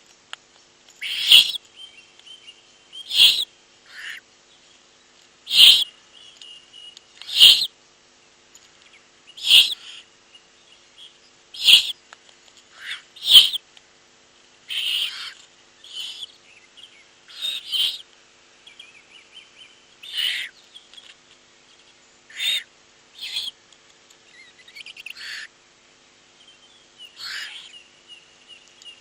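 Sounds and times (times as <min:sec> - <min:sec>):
owlets hissing begging calls: 0:01.0 - 0:01.6, 0:03.0 - 0:04.2, 0:05.5 - 0:05.9, 0:07.2 - 0:07.7, 0:09.4 - 0:10.1, 0:11.6 - 0:12.0, 0:12.7 - 0:13.6, 0:14.7 - 0:16.3, 0:17.3 - 0:18.0, 0:20.0 - 0:20.6, 0:22.3 - 0:23.6, 0:25.0 - 0:25.5, 0:27.1 - 0:27.8.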